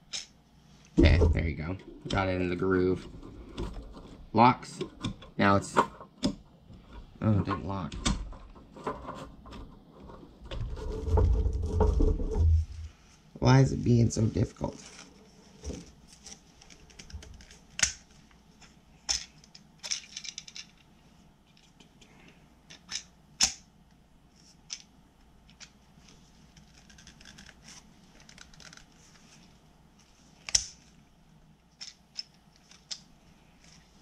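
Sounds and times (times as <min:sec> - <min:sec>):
plastic rattles and scrapes: 0:01.0 - 0:12.9.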